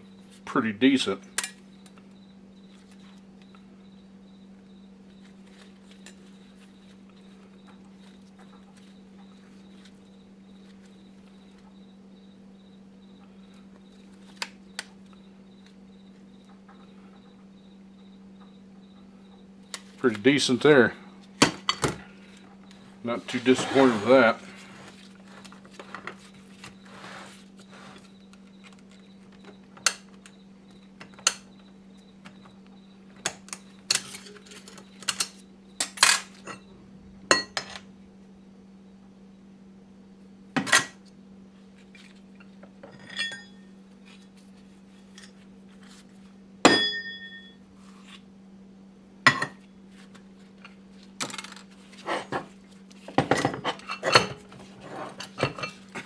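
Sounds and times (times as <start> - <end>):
metal plates clinking: 42.8 - 43.6, 46.7 - 47.6.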